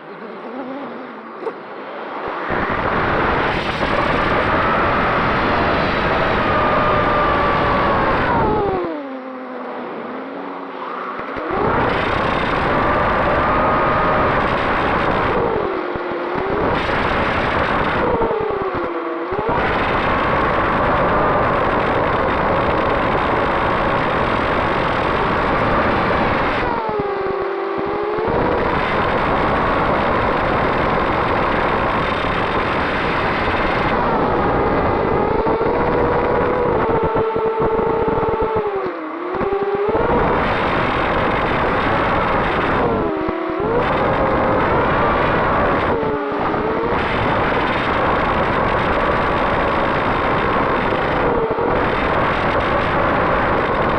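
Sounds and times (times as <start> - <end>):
rush of air: 0.9 - 27.2, 39.3 - 53.9
quadcopter motors whining: 2.2 - 53.9.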